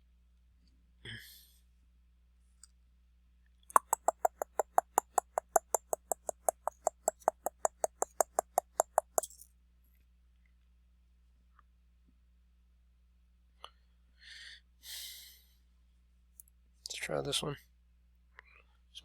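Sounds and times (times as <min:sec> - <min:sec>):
rapid mechanical clicks: 0:03.8 - 0:09.3.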